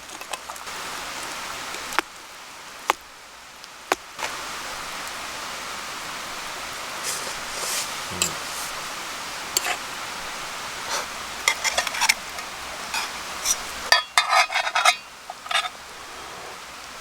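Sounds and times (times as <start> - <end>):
steady hiss: 0.6 - 17.0
metal cookware clinking: 9.6 - 9.8, 11.5 - 15.8.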